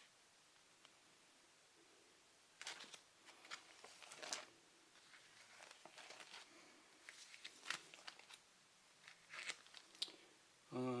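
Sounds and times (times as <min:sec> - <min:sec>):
paper rustling: 0:02.6 - 0:08.4, 0:09.0 - 0:10.0.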